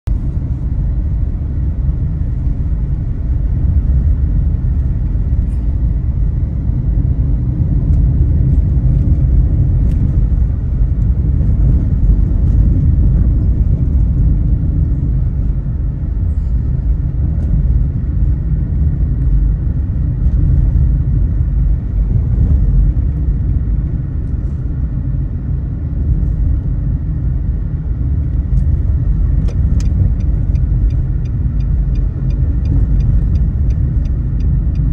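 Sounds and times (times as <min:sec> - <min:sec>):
car engine and road noise: 0:00.0 - 0:34.9.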